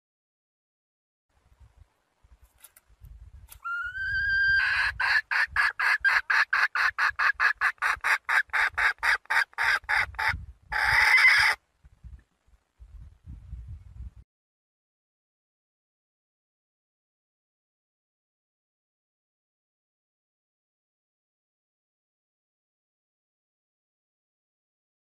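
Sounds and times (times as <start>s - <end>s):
hen calling and clucking: 3.5s - 11.6s.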